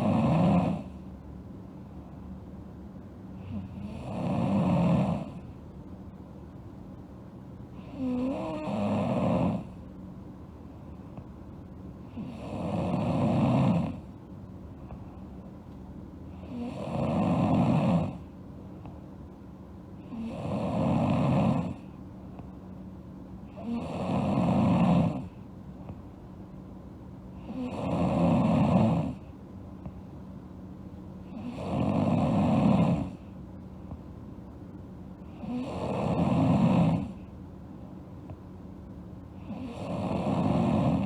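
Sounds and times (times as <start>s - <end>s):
girl snoring: 0.0s - 1.0s, 3.4s - 5.4s, 7.8s - 9.7s, 12.1s - 14.1s, 16.4s - 18.2s, 20.0s - 21.9s, 23.5s - 25.3s, 27.4s - 29.2s, 31.3s - 33.2s, 35.4s - 37.2s, 39.4s - 41.0s.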